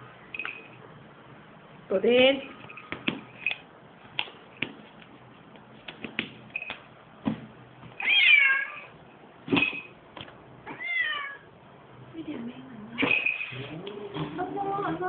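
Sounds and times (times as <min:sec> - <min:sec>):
cat meowing: 0:08.0 - 0:09.0, 0:10.6 - 0:11.5.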